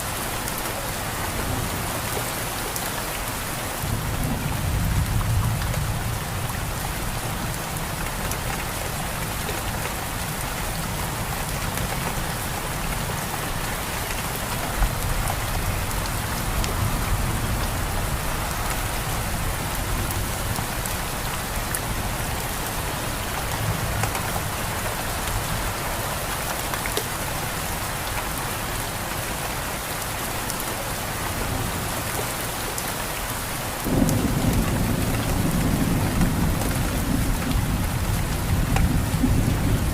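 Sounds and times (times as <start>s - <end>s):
heavy rain on surfaces: 0.0s - 39.9s
low rumble of thunder: 33.8s - 39.9s.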